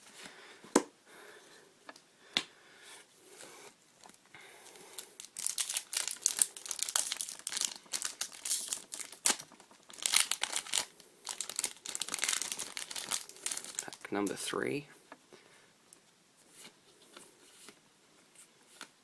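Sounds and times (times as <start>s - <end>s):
foil wrapper crinkling: 5.0s - 14.4s.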